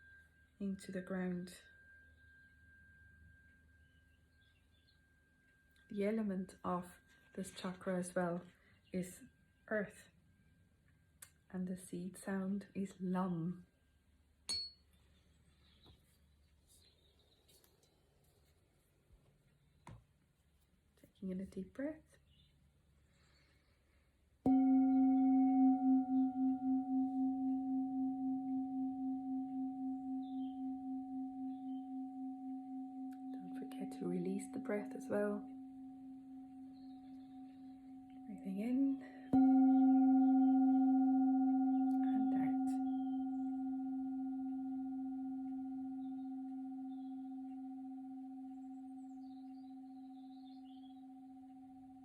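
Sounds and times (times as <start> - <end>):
singing bowl ringing: 0.0 - 6.0, 24.5 - 52.0.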